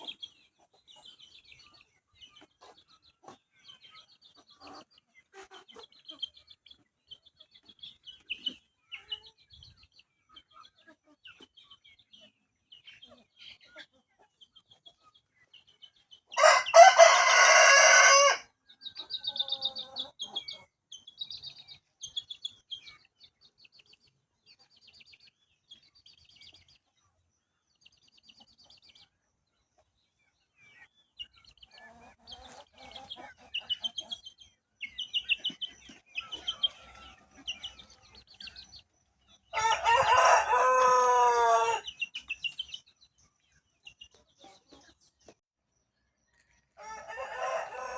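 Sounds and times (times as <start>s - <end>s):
rooster crowing: 16.4s - 18.5s, 39.6s - 41.8s, 46.8s - 47.9s.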